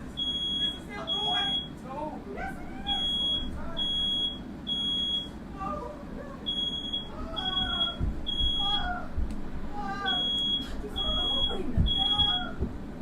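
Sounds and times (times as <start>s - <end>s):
smoke alarm beeping: 0.2s - 1.8s, 2.9s - 5.4s, 6.5s - 8.9s, 10.1s - 12.6s.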